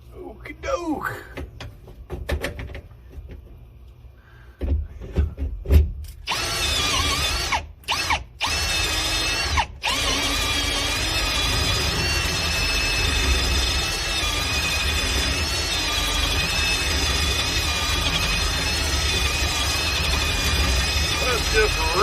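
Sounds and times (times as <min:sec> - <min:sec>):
power drill whining: 0:06.2 - 0:22.0.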